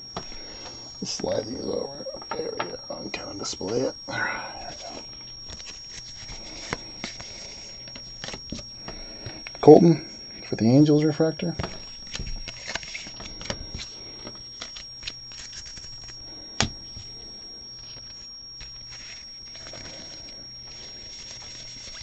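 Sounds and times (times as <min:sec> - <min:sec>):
trading cards sliding and rustling: 0:04.6 - 0:09.5, 0:11.7 - 0:17.2, 0:17.8 - 0:22.0.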